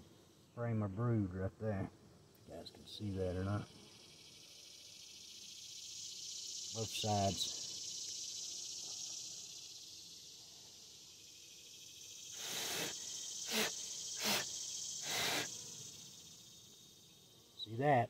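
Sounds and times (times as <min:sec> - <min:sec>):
crickets chirring: 0:00.0 - 0:18.0
short hissing bursts: 0:05.1 - 0:16.9.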